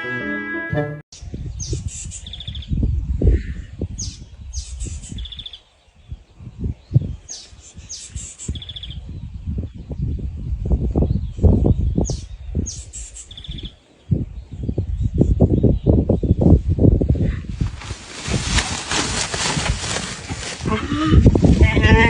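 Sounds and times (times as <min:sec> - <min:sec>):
songbird singing with buzzy trill: 0:01.2 - 0:17.0.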